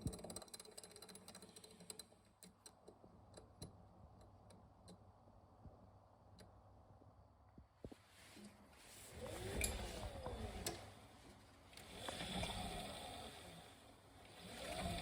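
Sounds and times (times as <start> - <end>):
washing machine motor whine: 8.9 - 15.0.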